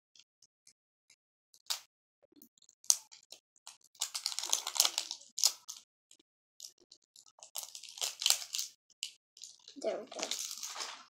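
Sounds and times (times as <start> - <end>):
packets rustling: 9.4 - 11.0.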